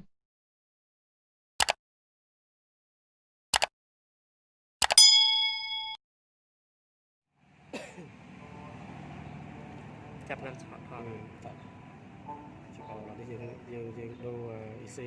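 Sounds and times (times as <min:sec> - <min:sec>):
short double clicks: 0:03.5 - 0:03.7
bell-like ding: 0:05.0 - 0:06.0
low humming noise: 0:07.4 - 0:15.0.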